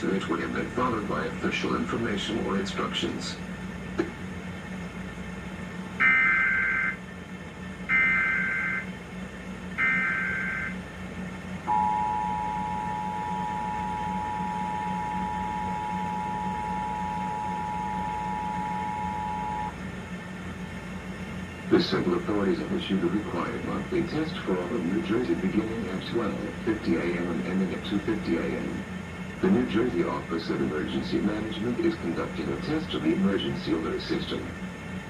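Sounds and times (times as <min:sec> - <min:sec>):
steady low hum: 0:00.0 - 0:35.0
two-tone attention signal: 0:06.0 - 0:07.0, 0:07.9 - 0:08.9, 0:09.8 - 0:10.8, 0:11.7 - 0:19.8
warbling data bursts: 0:11.7 - 0:19.8.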